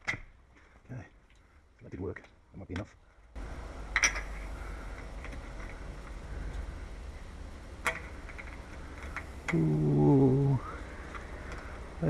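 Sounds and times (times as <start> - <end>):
steady low rumble: 3.3 - 12.0.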